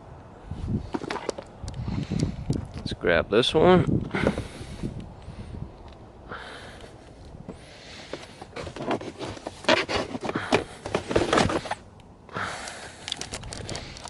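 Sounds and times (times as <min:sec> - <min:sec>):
clicks and rustling: 0:00.9 - 0:02.8, 0:08.0 - 0:14.0
plastic floor liner scraping: 0:08.0 - 0:11.8.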